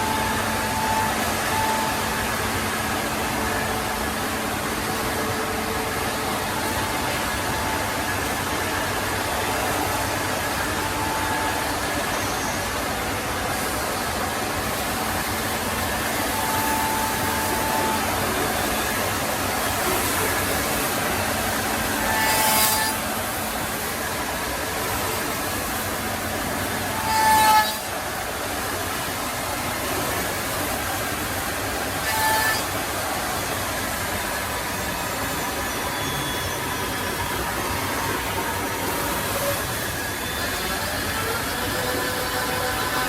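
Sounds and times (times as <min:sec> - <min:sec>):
wood router cutting: 0:32.0 - 0:32.8, 0:36.5 - 0:43.0.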